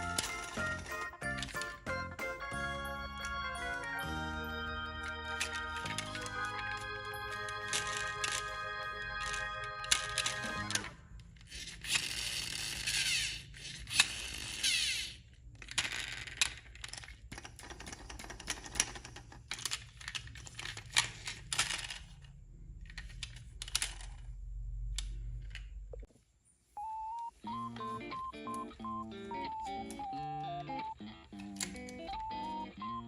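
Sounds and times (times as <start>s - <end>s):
clicking and rattling machinery: 0.0s - 2.2s, 15.5s - 24.3s.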